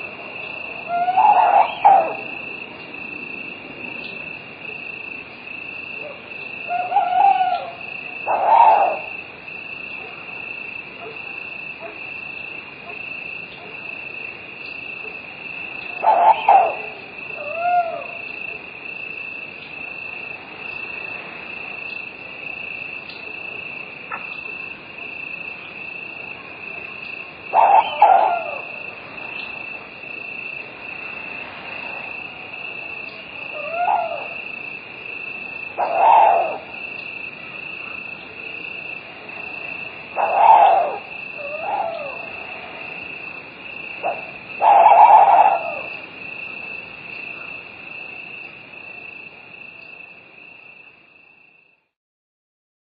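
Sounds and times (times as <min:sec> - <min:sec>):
owl hooting: 0:00.0 - 0:03.4, 0:05.9 - 0:13.8, 0:14.8 - 0:18.7, 0:26.0 - 0:30.6, 0:32.1 - 0:47.6
crickets chirping: 0:00.0 - 0:52.0.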